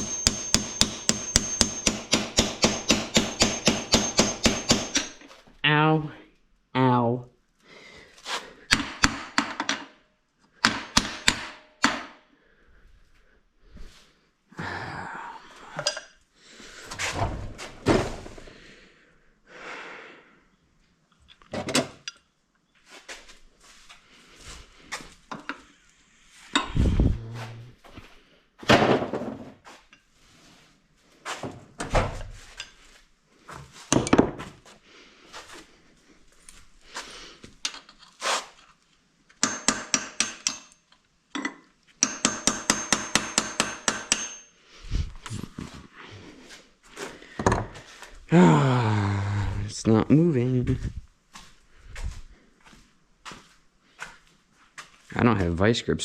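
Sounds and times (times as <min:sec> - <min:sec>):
metal hand tools knocking and scraping: 0:00.0 - 0:05.4, 0:39.4 - 0:44.5.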